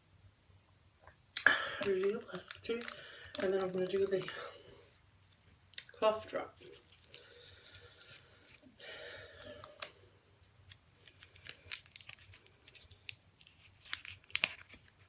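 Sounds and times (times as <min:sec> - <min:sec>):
wrapper crinkling and tearing: 0:01.7 - 0:04.5, 0:05.6 - 0:08.7, 0:10.6 - 0:15.0.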